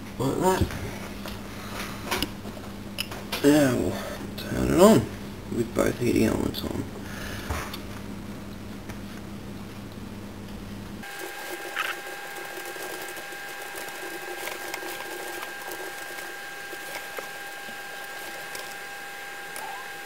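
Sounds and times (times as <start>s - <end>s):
toaster oven whine: 11.0s - 20.0s.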